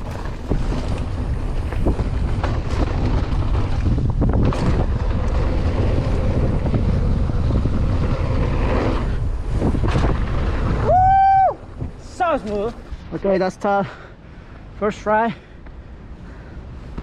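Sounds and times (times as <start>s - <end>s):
bike knocking and rattling: 0.0s - 10.9s, 11.7s - 13.6s
wind buffeting microphone: 0.0s - 13.4s.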